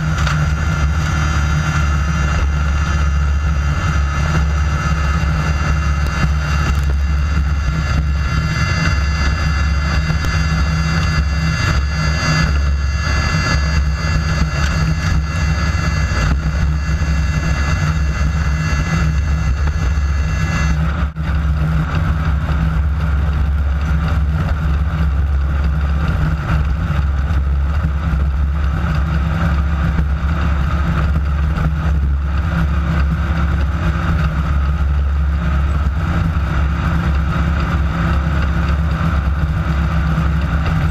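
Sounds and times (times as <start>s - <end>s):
thin high whine: 0.0s - 22.6s
buggy engine droning: 0.0s - 40.9s
rough chassis and terrain noise: 0.0s - 40.9s.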